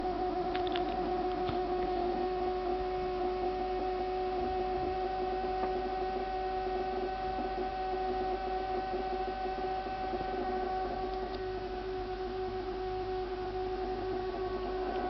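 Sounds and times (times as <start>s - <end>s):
refrigerator humming: 0.0s - 15.0s
faint clicks: 0.5s - 1.9s.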